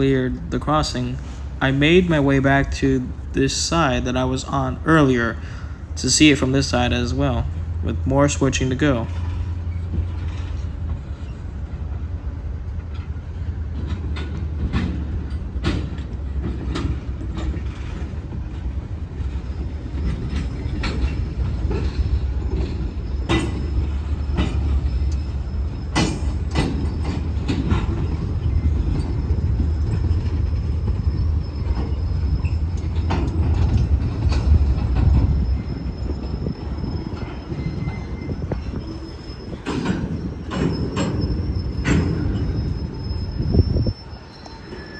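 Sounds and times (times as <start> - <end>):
diesel locomotive low rumble: 0.0 - 44.9
train wheels clacking and knocking: 0.0 - 44.9
thin wheel squeal: 28.1 - 44.9.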